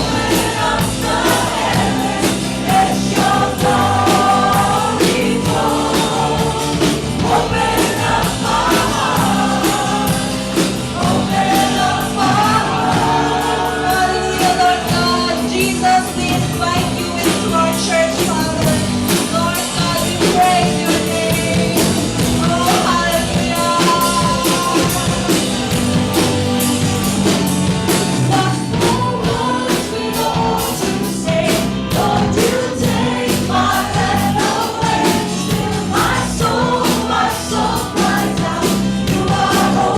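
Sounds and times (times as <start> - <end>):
band playing: 0.0 - 39.9
drums keeping a steady beat: 0.0 - 39.9
singers leading a praise song: 0.0 - 39.9.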